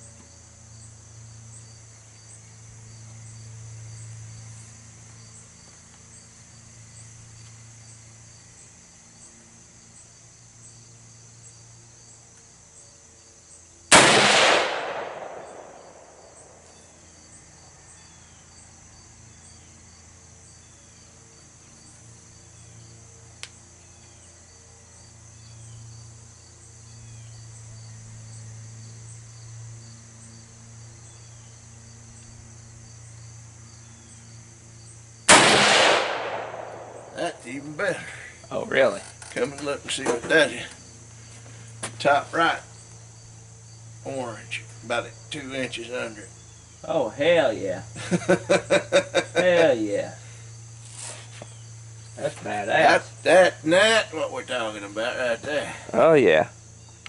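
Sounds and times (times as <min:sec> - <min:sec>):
insects chirping: 0:00.0 - 0:57.0
rifle shot echoing: 0:13.9 - 0:16.5, 0:35.3 - 0:37.2.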